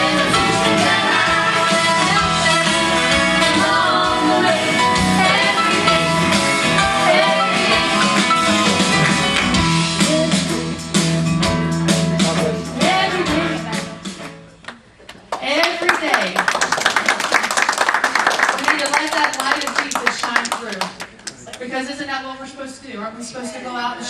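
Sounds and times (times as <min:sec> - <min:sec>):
gospel vocal group singing: 0:00.0 - 0:08.5, 0:12.4 - 0:13.9
instrumental accompaniment: 0:00.0 - 0:14.6.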